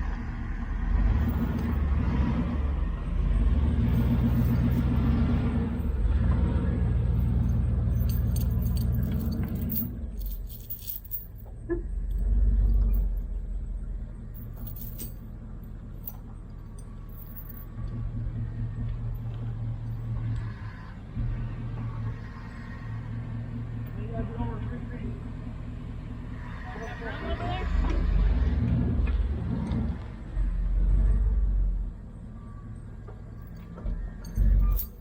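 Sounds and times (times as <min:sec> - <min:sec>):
truck engine revving: 0:00.0 - 0:10.6, 0:11.4 - 0:32.8
metallic jingling and clinks: 0:03.9 - 0:05.1, 0:07.2 - 0:11.4, 0:14.3 - 0:17.8, 0:33.4 - 0:35.0.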